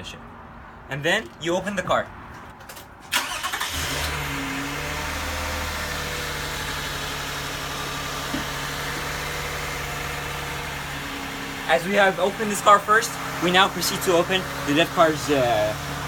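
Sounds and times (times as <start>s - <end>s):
car engine starting and idling: 1.1s - 16.0s.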